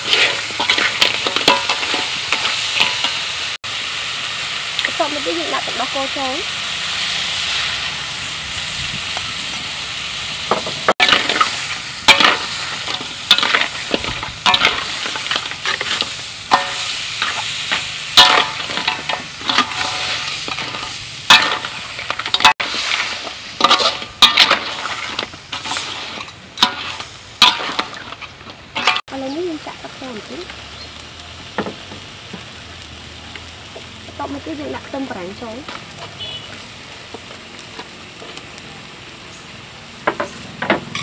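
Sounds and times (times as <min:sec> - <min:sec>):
utensil scraping a pan: 0:00.0 - 0:03.2, 0:11.0 - 0:29.0
curry sizzling in a pan: 0:00.0 - 0:41.0.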